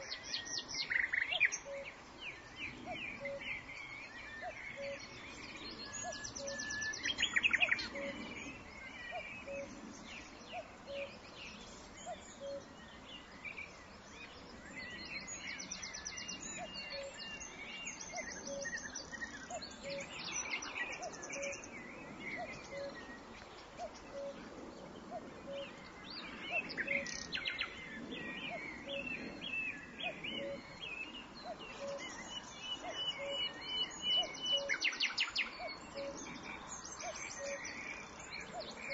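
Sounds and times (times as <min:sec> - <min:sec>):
songbirds singing and trilling: 0:00.0 - 0:38.9.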